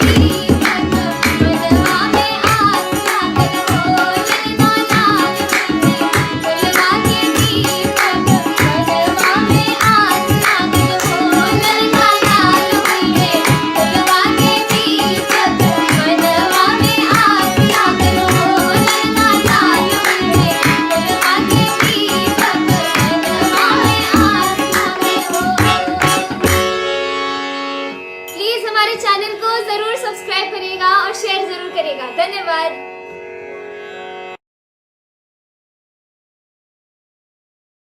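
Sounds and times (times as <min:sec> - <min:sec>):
children singing: 0:00.0 - 0:26.7
instrumental accompaniment: 0:00.0 - 0:34.4.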